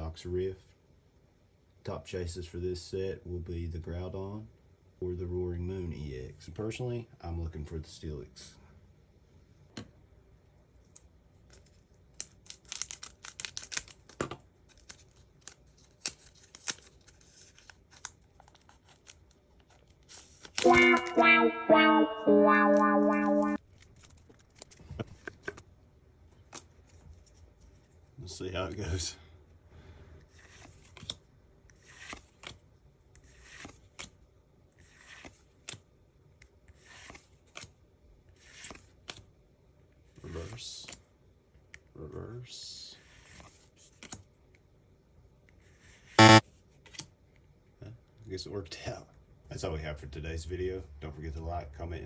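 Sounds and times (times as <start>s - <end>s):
wrapper and cards rustling: 11.5s - 21.1s
cards sliding with soft swishes: 30.3s - 31.2s, 33.2s - 34.1s, 34.8s - 35.8s, 36.7s - 37.7s.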